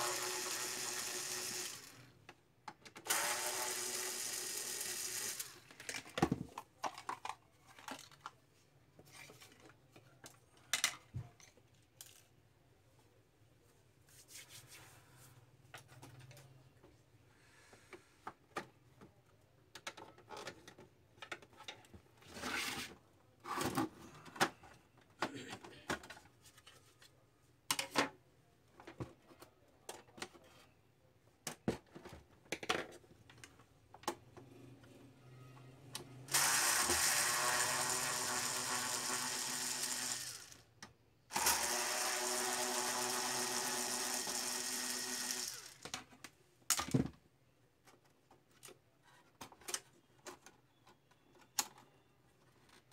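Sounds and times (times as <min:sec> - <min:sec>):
small motor running: 0:00.0 - 0:02.0, 0:03.1 - 0:05.6, 0:36.3 - 0:40.6, 0:41.3 - 0:45.8.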